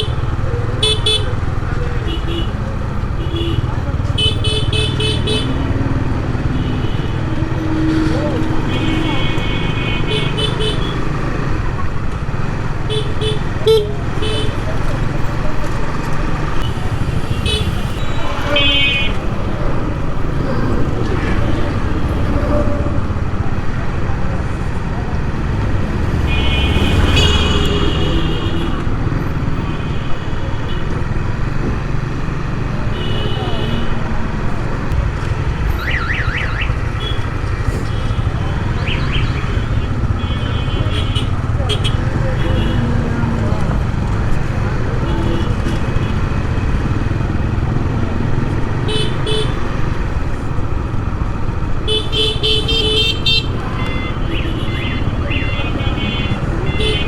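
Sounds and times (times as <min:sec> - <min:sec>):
vehicle horns beeping: 0:00.0 - 0:02.6, 0:03.2 - 0:11.2, 0:12.8 - 0:14.8, 0:16.6 - 0:19.5, 0:26.1 - 0:31.0, 0:35.5 - 0:43.0, 0:51.8 - 0:57.0
wind and road noise rumble: 0:05.0 - 0:29.7, 0:33.6 - 0:56.9
high-pitched tone: 0:35.6 - 0:36.9.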